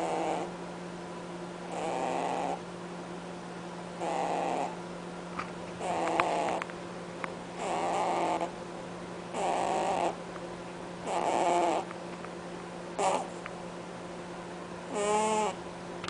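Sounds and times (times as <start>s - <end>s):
rabbit snoring honks: 0.0s - 0.5s, 1.7s - 2.6s, 4.0s - 4.8s, 5.8s - 6.6s, 7.6s - 8.6s, 9.3s - 10.2s, 11.0s - 11.9s, 13.0s - 13.3s, 14.9s - 15.6s.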